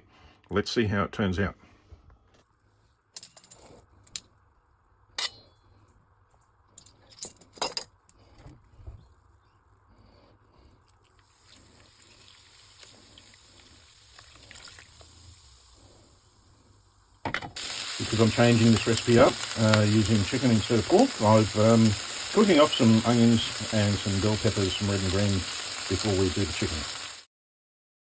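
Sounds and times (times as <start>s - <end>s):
vegetables sizzling in a pan: 11.2s - 27.3s.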